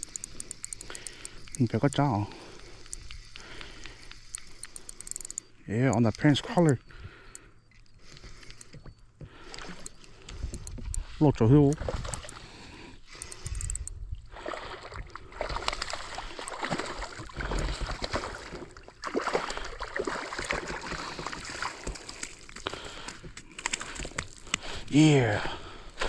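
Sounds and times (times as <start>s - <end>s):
small clicks and knocks: 0.0s - 2.0s, 2.8s - 11.0s, 13.1s - 14.0s
water sloshing and splashing: 9.3s - 12.7s, 13.5s - 24.9s.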